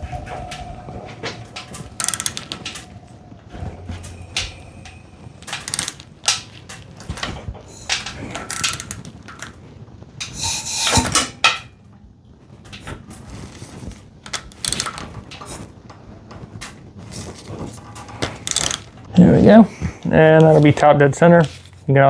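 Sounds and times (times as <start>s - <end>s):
socket wrench clinking on metal: 5.4s - 6.5s, 7.7s - 9.5s
brief rushing scrape: 10.3s - 11.5s.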